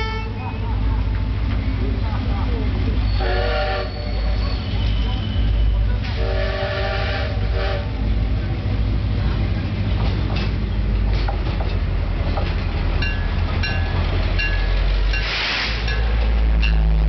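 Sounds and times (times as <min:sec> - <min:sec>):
locomotive engine rumble: 0:00.0 - 0:17.0
wheels clanking on rail: 0:00.0 - 0:17.0
train horn blast: 0:03.2 - 0:08.0.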